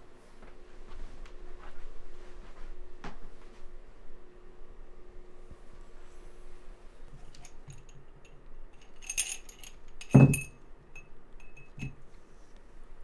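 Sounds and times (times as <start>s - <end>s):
small metal objects clinking: 8.8s - 10.5s, 11.4s - 11.9s
knock and ring: 9.0s - 10.5s, 11.4s - 12.0s.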